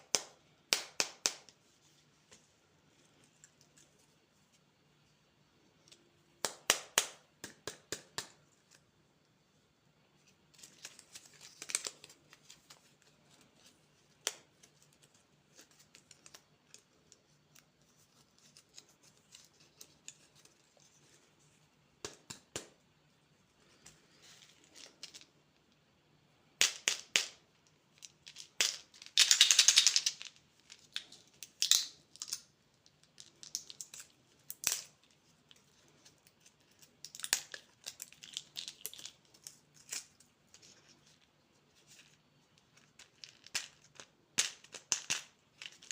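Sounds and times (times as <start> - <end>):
plastic wrappers crinkling: 10.6 - 13.8, 28.1 - 45.9.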